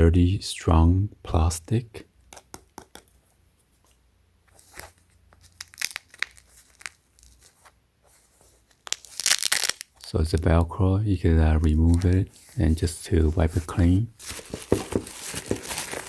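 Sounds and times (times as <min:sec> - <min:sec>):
velcro fastener ripping apart: 0:05.4 - 0:07.4, 0:08.8 - 0:10.1
fabric and plastic headrest rustling: 0:11.8 - 0:16.0.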